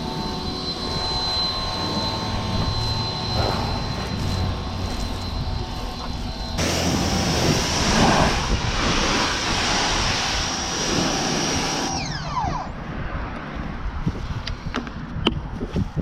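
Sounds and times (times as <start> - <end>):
machine motor rushing noise: 0.0 - 12.8
motor winding down whine: 0.0 - 12.8.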